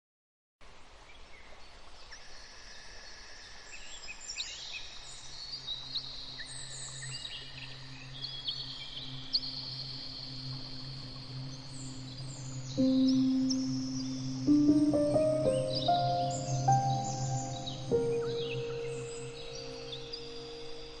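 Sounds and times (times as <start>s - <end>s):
steady hiss: 5.2s - 21.0s
birds chirping: 8.5s - 21.0s.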